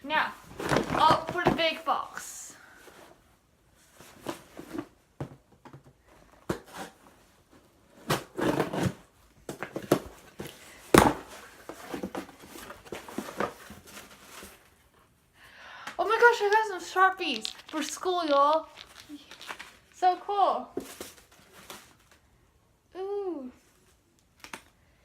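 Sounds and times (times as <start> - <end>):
cardboard box rustling and scraping: 8.2 - 9.1.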